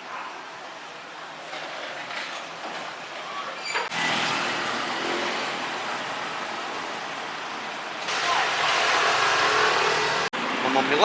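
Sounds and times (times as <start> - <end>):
heavy rain pouring: 4.0 - 10.7.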